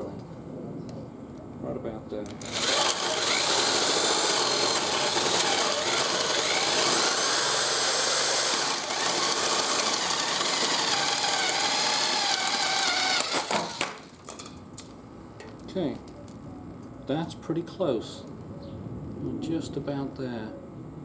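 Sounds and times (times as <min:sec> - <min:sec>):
electric drill boring into wood: 0:02.4 - 0:14.1.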